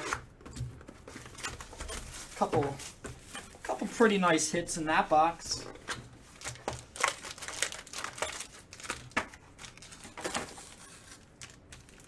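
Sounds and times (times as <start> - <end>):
plastic wrapping crinkling and tearing: 1.2 - 4.2, 5.5 - 12.0.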